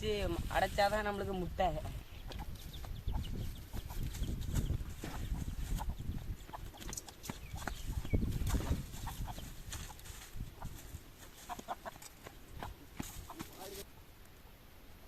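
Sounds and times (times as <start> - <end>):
chickens clucking: 1.8 - 14.1
knocks and scuffs of movement: 2.3 - 13.9.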